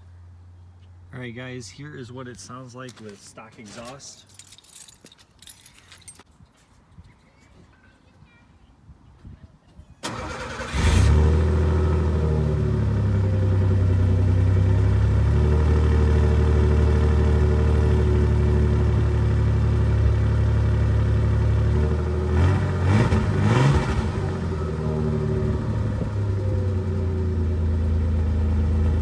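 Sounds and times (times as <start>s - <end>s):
truck engine idling and revving: 10.1s - 29.0s.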